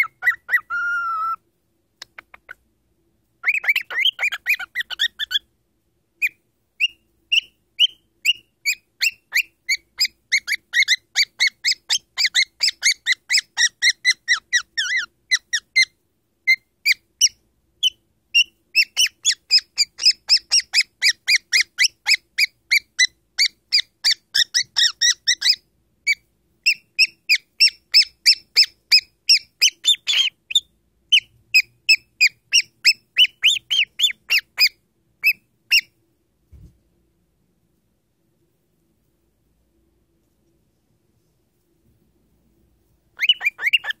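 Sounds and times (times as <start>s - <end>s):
cockatiel squeaky chirps: 0.0s - 1.4s, 2.0s - 2.6s, 3.4s - 5.5s, 6.2s - 36.0s, 43.2s - 44.0s.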